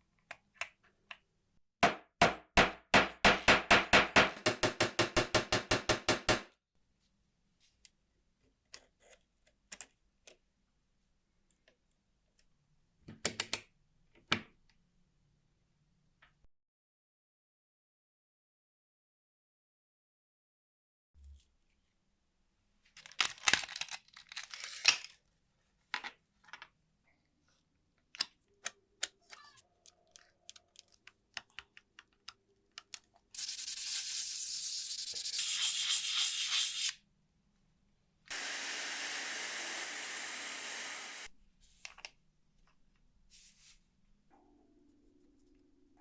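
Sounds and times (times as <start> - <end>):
pressurised spray hissing: 33.4 - 35.4, 38.3 - 41.3.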